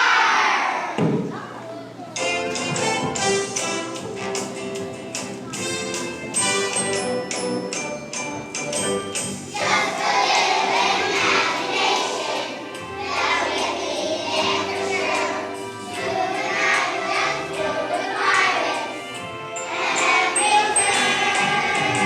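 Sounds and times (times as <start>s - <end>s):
instrumental accompaniment: 2.2s - 22.0s
children singing in a choir: 9.5s - 22.0s
tinkly bell-like notes: 19.2s - 22.0s.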